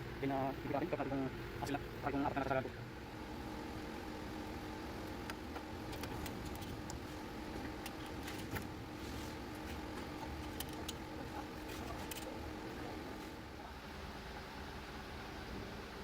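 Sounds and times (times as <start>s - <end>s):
low mechanical hum: 0.0s - 16.0s
hand tools clicking and tapping: 10.0s - 11.0s.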